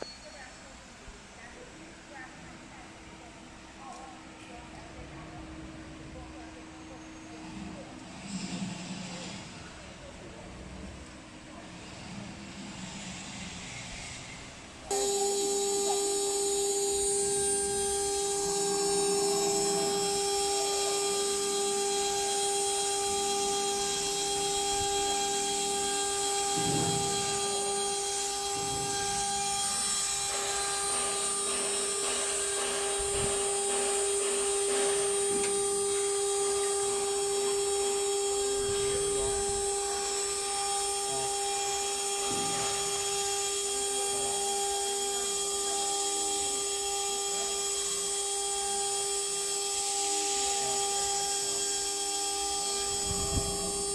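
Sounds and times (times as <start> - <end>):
router machine whine: 2.5 - 53.9
cutting noise: 14.9 - 53.9.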